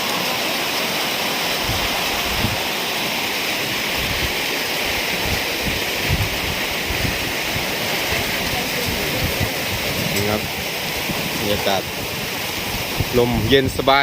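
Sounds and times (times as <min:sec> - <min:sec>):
rain falling: 0:00.0 - 0:14.0
wind buffeting microphone: 0:01.6 - 0:02.7, 0:03.6 - 0:14.0.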